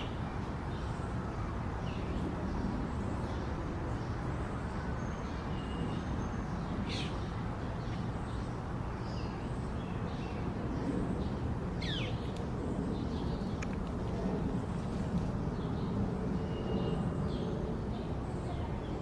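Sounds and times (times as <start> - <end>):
wild birds chirping and whistling: 1.8 - 13.7
steady low rumble: 9.4 - 19.0.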